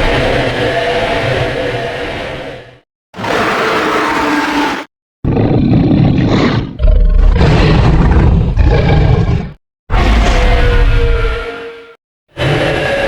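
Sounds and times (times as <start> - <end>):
creature roaring: 3.2 - 11.8, 12.4 - 13.0.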